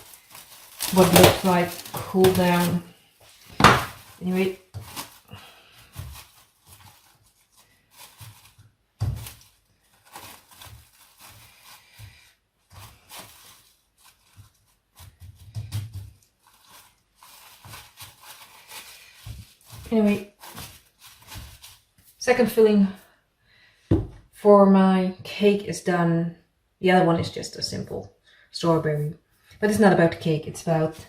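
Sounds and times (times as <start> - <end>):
kitchen things knocking and clattering: 3.5 - 4.1
dull thuds: 3.5 - 5.0, 23.9 - 24.2.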